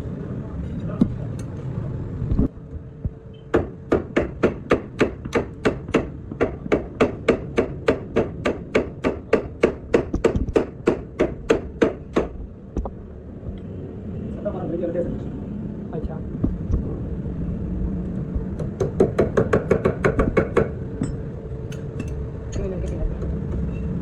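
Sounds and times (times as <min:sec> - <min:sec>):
hammer striking metal part: 0:18.6 - 0:22.2.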